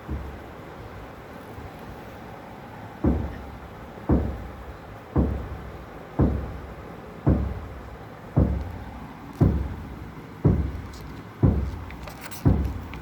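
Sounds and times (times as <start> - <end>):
dull low thumps: 0.0 - 1.7, 2.6 - 13.0.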